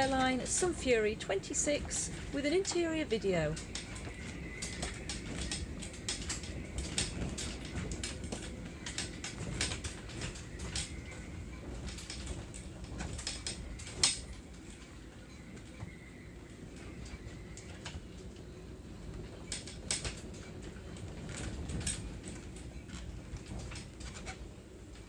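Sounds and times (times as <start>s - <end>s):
light clicks and ticks: 0.0s - 25.0s.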